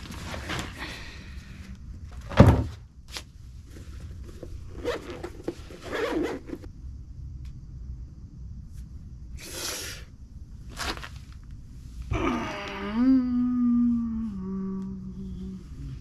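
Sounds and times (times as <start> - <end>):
rustling and scraping: 0.0 - 6.7, 10.6 - 12.1.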